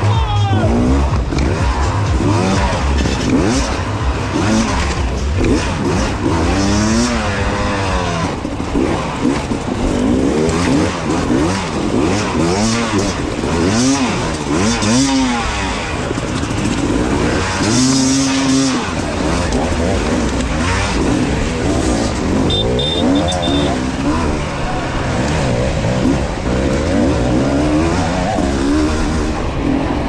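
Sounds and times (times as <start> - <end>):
motorcycle engine revving: 0.0 - 30.0.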